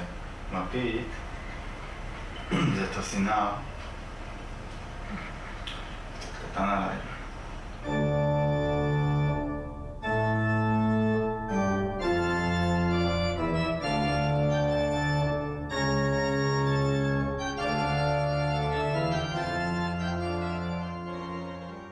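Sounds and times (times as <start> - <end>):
organ playing sustained chords: 6.6 - 21.9.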